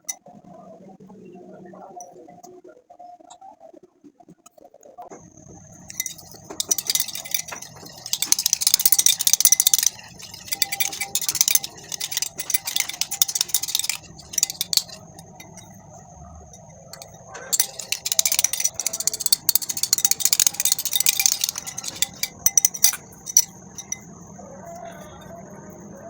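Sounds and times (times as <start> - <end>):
spoon scraping a bowl: 5.9 - 15.8, 17.0 - 24.0.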